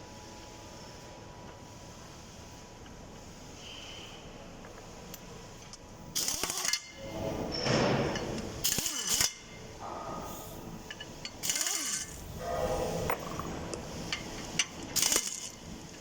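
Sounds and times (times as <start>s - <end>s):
tools scraping and clanking metal: 6.2s - 15.6s.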